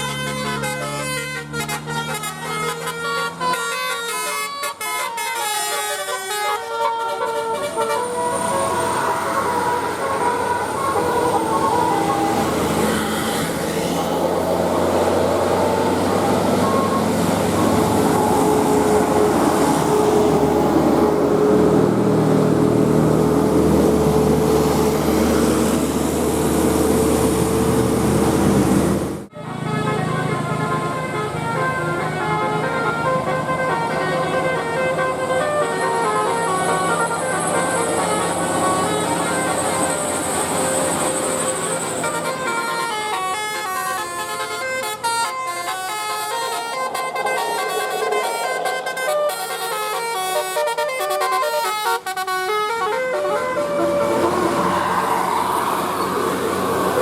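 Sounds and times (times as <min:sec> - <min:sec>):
multi-tone bus horn tune: 0:00.0 - 0:57.0
road noise: 0:00.0 - 0:57.0
steady noisy rush: 0:46.0 - 0:50.1.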